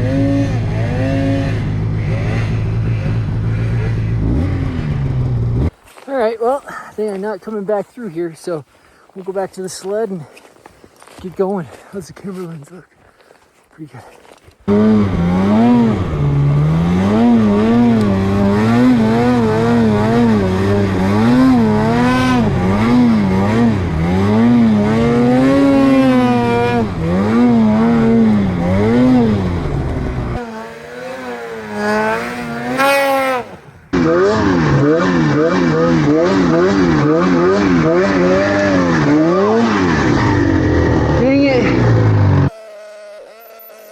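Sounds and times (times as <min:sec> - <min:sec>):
snowmobile engine revving: 0:00.0 - 0:05.7, 0:14.6 - 0:43.9.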